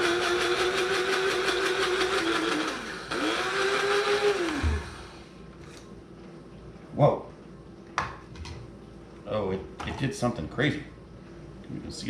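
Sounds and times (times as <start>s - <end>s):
electric spice grinder running: 0.0s - 5.2s.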